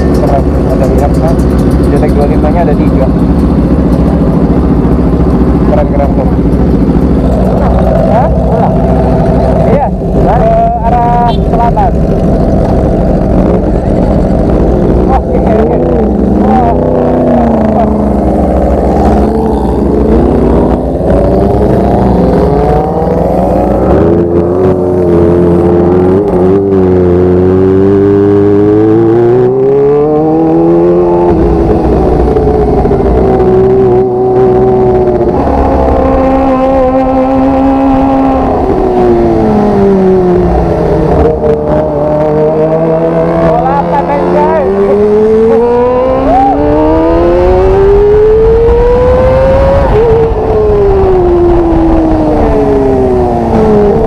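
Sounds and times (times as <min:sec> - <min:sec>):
steady low rumble: 0:00.0 - 0:26.8, 0:30.5 - 0:45.9
motorcycle engine revving: 0:00.0 - 0:54.0.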